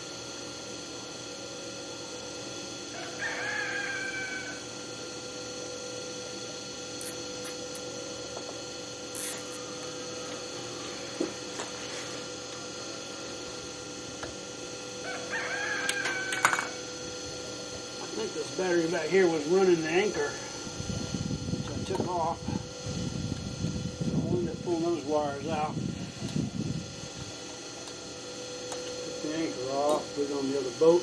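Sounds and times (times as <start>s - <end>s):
rooster crowing: 2.9s - 4.7s, 15.0s - 16.8s
steady hum: 4.0s - 31.0s.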